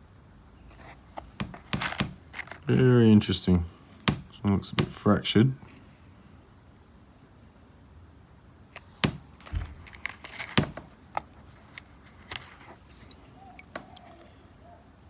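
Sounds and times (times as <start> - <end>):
stones clicking when set down: 0.8 - 2.8, 8.8 - 14.3.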